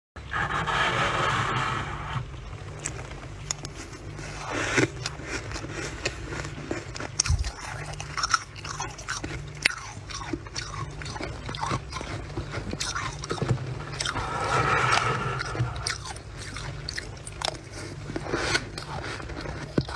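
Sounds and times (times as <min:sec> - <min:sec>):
chewing crunchy frost: 0:02.7 - 0:19.9.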